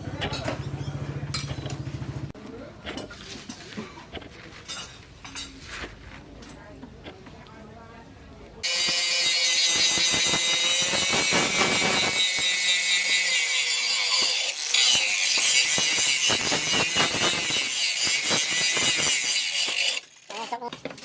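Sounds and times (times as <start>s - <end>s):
power tool grinding steel: 8.6s - 20.7s.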